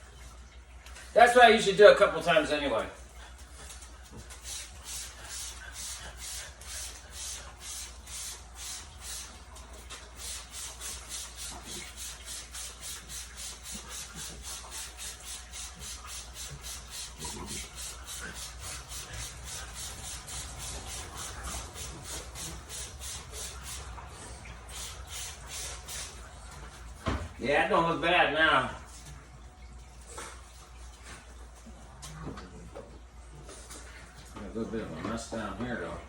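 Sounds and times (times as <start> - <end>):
rhythmic short hissing strokes: 3.2 - 27.0.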